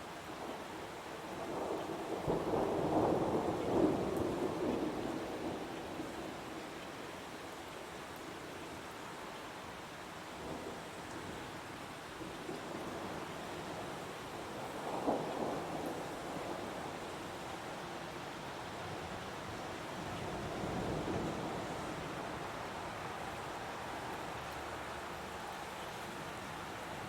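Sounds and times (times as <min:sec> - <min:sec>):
heavy rain falling in a forest: 0:00.0 - 0:27.0.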